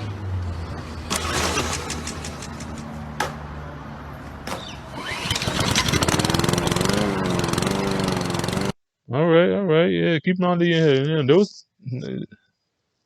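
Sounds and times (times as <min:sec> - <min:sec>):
lawn mower engine running: 0:01.1 - 0:08.8.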